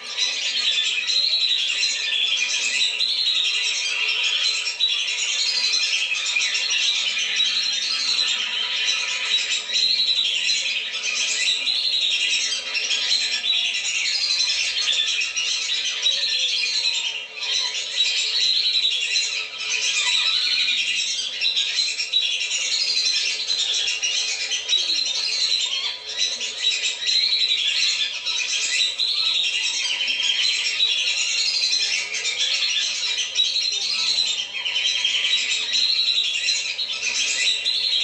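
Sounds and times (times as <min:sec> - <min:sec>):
whistling ducks calling: 0:00.0 - 0:38.0.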